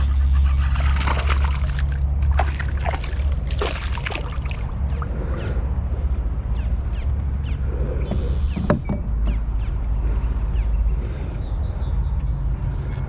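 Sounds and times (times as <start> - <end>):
water splashing against kayak: 0.0 - 5.5
low rumble: 0.0 - 13.0.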